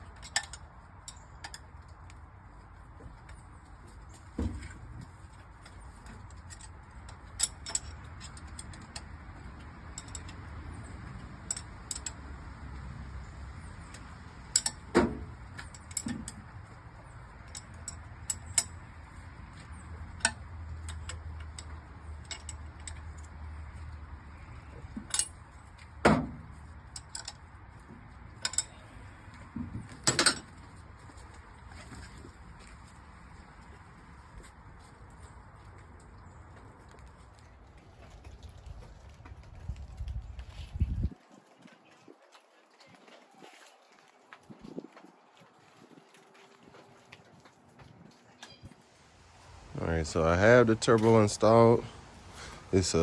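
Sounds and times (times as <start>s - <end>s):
metal tools clinking: 0.0s - 1.7s, 5.7s - 9.1s, 9.9s - 10.5s, 13.9s - 16.5s, 17.4s - 18.8s, 20.1s - 23.4s, 26.6s - 27.4s, 28.4s - 28.9s.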